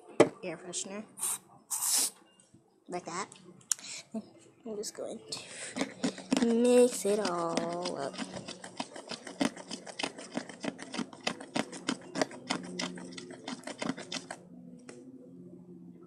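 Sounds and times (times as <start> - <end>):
slime being stirred: 5.4 - 14.4.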